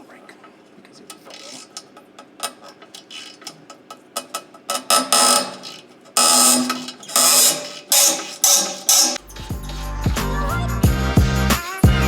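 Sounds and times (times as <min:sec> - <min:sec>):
buzzing tool bursts: 0:04.7 - 0:09.3.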